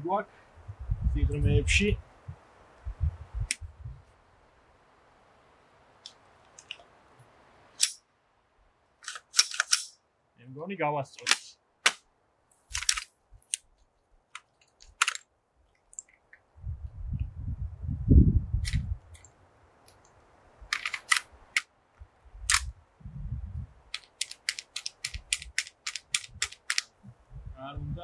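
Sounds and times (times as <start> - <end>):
rifle action metallic clicks: 7.8 - 8.0, 9.0 - 10.0, 12.7 - 15.3, 20.7 - 21.7, 22.5 - 22.7, 23.9 - 27.0.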